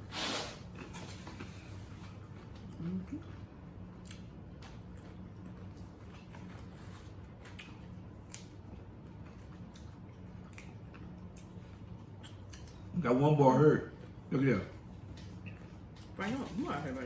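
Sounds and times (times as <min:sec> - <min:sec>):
crunchy chewing: 0:00.8 - 0:13.0.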